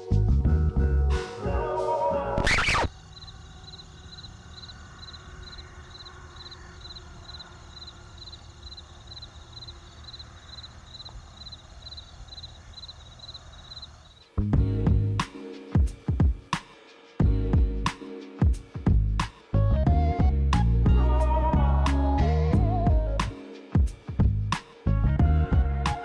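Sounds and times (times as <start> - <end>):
high cricket-like chirps: 2.4 - 14.4.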